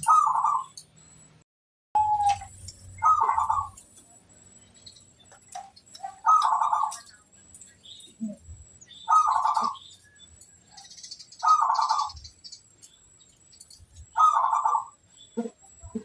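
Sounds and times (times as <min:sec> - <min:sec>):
dove cooing: 0:00.0 - 0:00.7, 0:02.0 - 0:03.8, 0:05.5 - 0:07.2, 0:08.2 - 0:10.0, 0:11.4 - 0:12.3, 0:14.0 - 0:16.0
faint high chirps: 0:00.0 - 0:01.4, 0:02.0 - 0:16.0.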